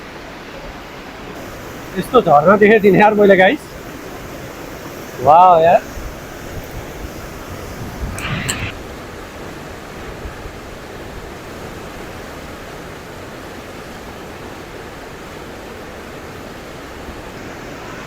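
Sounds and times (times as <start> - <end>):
waterfall rushing: 1.4 - 8.7, 16.7 - 18.0.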